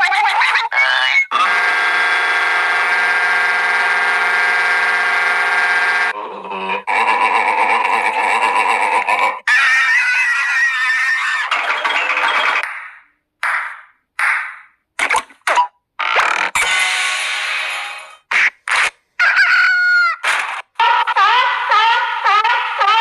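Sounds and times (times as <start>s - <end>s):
wavering cartoon effects: 19.2s - 23.0s.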